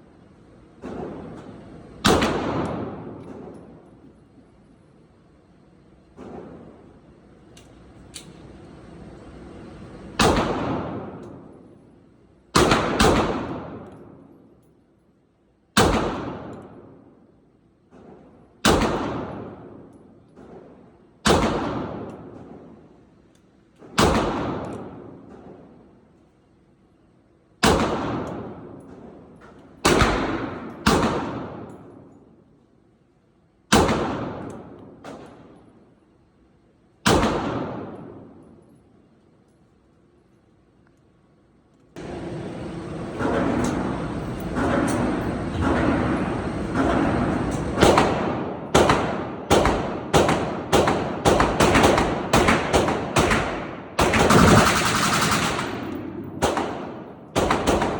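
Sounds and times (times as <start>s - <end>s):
echoing gunshots: 0.7s - 4.1s, 6.1s - 7.0s, 10.0s - 11.7s, 12.5s - 14.4s, 15.8s - 17.2s, 18.0s - 23.0s, 23.8s - 26.0s, 27.6s - 32.1s, 33.7s - 35.6s, 37.0s - 38.5s, 42.0s - 57.9s.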